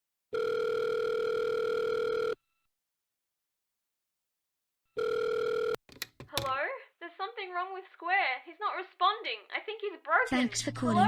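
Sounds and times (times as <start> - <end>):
telephone ringing tone: 0.3 - 2.7, 4.9 - 5.8.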